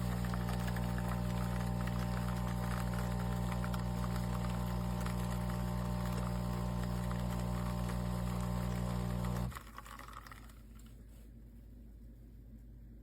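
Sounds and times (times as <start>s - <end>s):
espresso machine humming: 0.0s - 9.6s.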